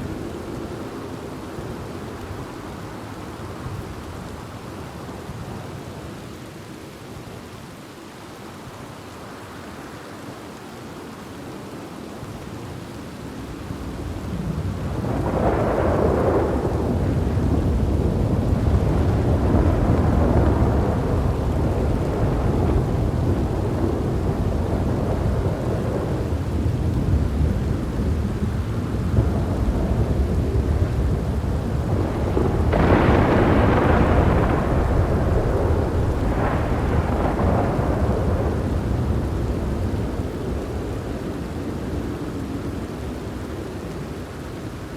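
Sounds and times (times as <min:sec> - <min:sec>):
steady rain: 0:00.0 - 0:44.9
rolling thunder: 0:13.8 - 0:43.0
sharp thunderclap: 0:14.4 - 0:40.9.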